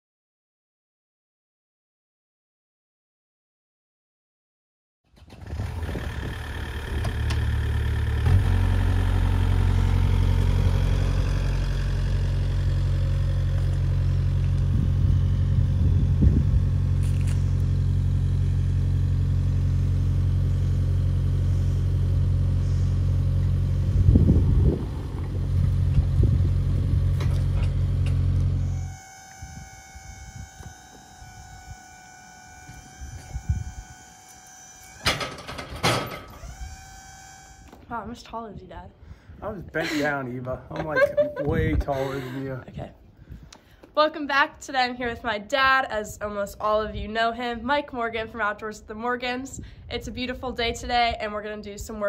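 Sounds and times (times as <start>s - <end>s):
combustion engine running: 5.2s - 37.8s.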